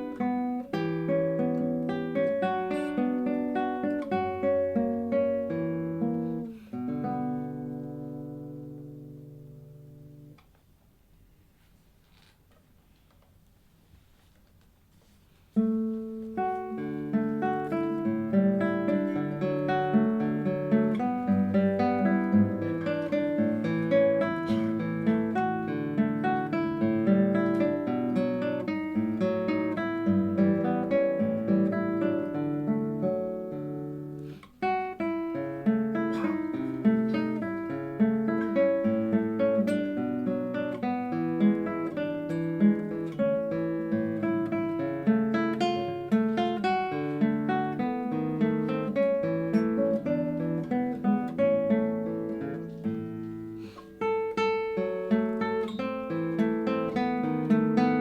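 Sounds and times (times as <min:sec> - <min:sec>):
fingerpicked classical guitar: 0:00.0 - 0:58.0.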